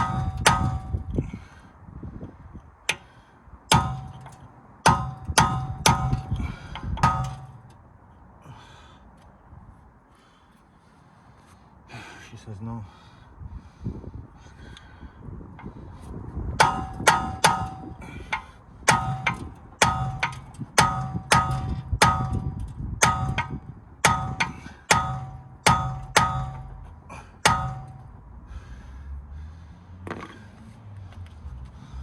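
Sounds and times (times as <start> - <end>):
hammer blows on metal: 3.7 - 7.7, 16.6 - 28.2.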